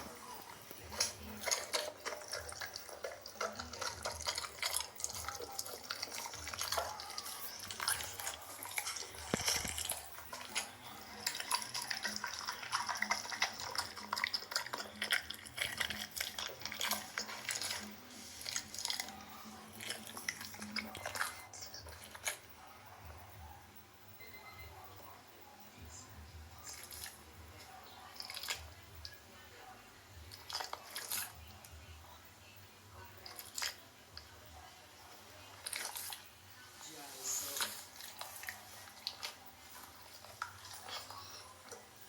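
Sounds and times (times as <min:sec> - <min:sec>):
dog eating with wet smacking: 0:00.0 - 0:23.5, 0:25.8 - 0:31.8, 0:33.0 - 0:36.4, 0:37.4 - 0:42.0.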